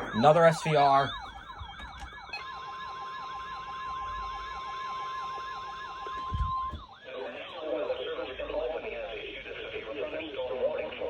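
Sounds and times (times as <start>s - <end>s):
broadcast voice: 0.0s - 1.2s, 7.1s - 11.0s
steady high tone: 0.0s - 9.4s.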